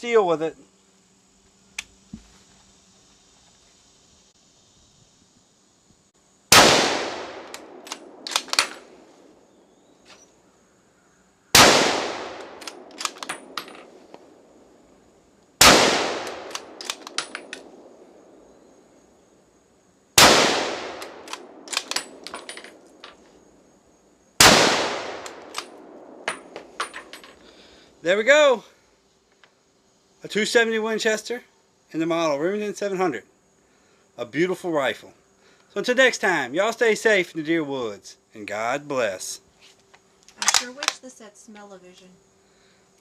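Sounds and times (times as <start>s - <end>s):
rifle shots: 6.5s - 8.9s, 11.5s - 13.7s, 15.6s - 17.9s, 20.2s - 22.4s, 24.4s - 26.6s
rifle bolt clicks: 7.4s - 8.8s, 12.4s - 13.7s, 16.2s - 17.7s, 20.9s - 22.6s, 25.2s - 25.8s.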